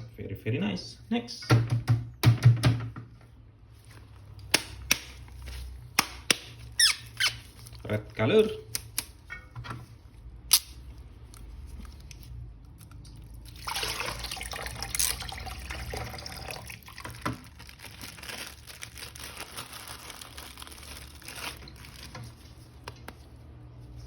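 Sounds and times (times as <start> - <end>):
tap water running: 13.5 - 17.4.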